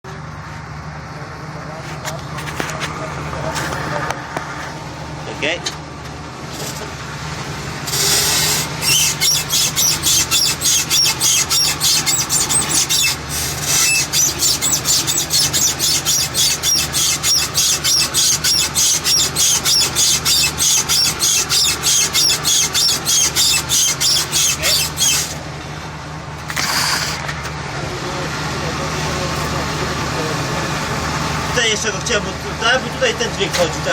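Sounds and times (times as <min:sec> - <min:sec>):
driveshaft joint squeaking: 0:07.8 - 0:25.5.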